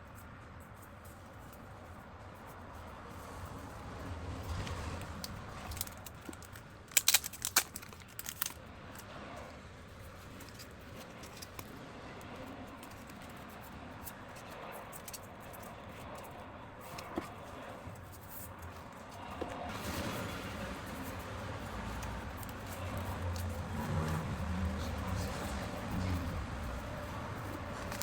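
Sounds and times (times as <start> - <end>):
packaging crinkling: 5.0 - 9.1, 18.0 - 28.0.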